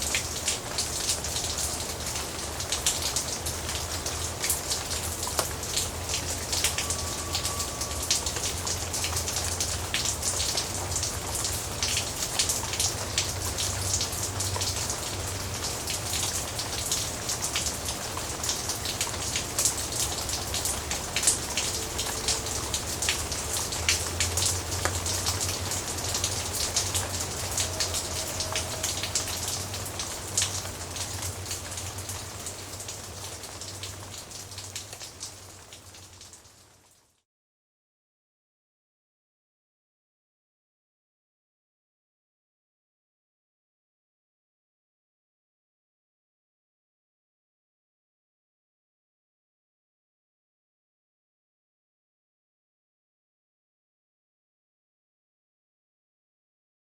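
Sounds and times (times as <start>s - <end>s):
raindrops tapping: 0.1s - 35.4s.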